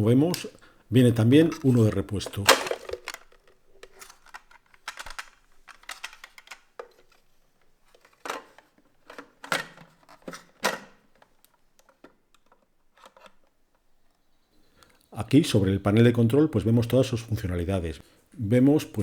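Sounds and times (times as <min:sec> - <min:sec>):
plastic parts clicking and knocking: 0:01.3 - 0:14.2.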